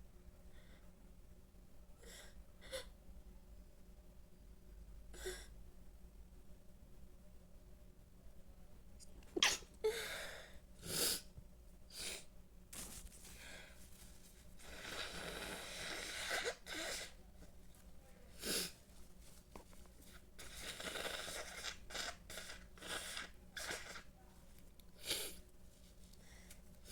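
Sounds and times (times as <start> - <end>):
person sneezing: 9.4 - 10.1.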